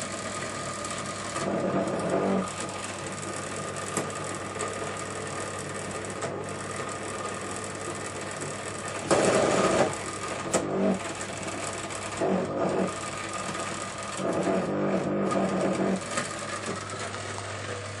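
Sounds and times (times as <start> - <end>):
washing machine humming: 0.0 - 18.0.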